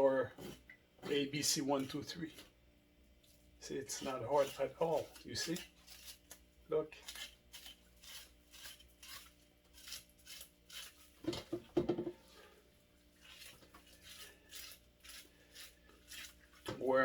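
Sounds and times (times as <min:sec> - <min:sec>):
knife scraping fish scales: 0:00.4 - 0:01.2, 0:03.9 - 0:06.4, 0:07.0 - 0:11.6, 0:12.2 - 0:16.9.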